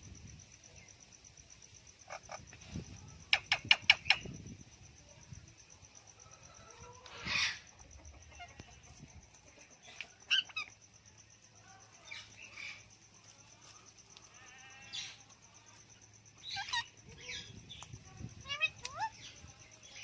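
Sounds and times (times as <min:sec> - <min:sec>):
parrot squawking and chattering: 0:16.4 - 0:17.4.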